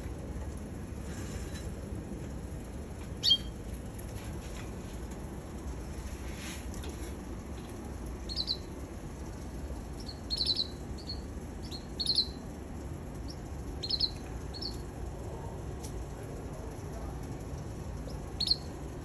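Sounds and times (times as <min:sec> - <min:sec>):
low background hum: 0:00.0 - 0:19.0
canary chirping: 0:03.2 - 0:03.6, 0:08.2 - 0:08.7, 0:10.0 - 0:12.4, 0:13.2 - 0:14.9, 0:18.0 - 0:18.8.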